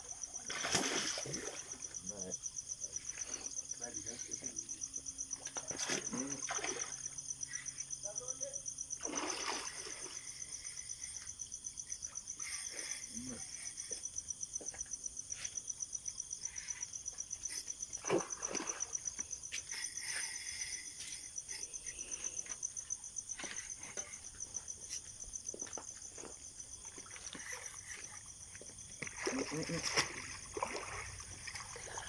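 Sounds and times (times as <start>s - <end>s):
insects chorus pulsing: 0.0s - 32.0s.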